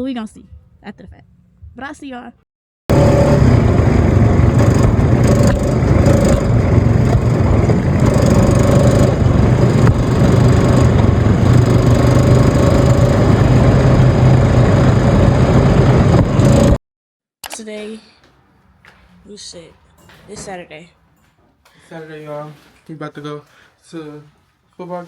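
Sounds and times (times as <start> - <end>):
constant low hum: 2.9 - 16.8
engine running with rough rumble: 2.9 - 16.8.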